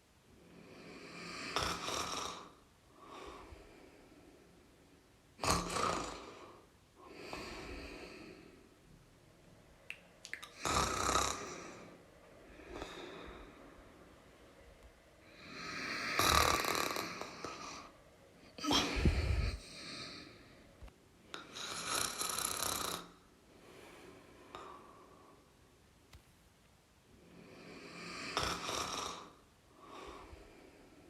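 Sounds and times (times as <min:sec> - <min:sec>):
person snoring: 0:00.6 - 0:03.6, 0:05.4 - 0:08.6, 0:10.5 - 0:12.0, 0:15.2 - 0:17.9, 0:21.4 - 0:23.2, 0:27.4 - 0:30.4.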